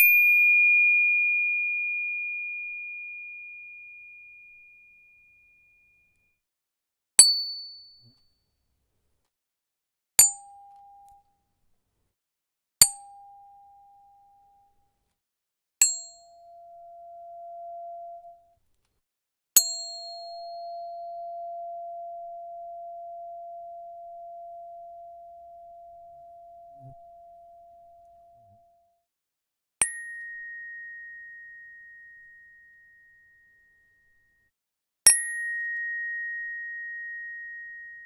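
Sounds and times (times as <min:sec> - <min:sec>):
tuning fork struck and ringing: 0:00.0 - 0:06.2, 0:10.2 - 0:11.3, 0:12.8 - 0:14.8, 0:15.8 - 0:18.6, 0:19.6 - 0:29.0, 0:29.8 - 0:34.5, 0:35.1 - 0:38.0.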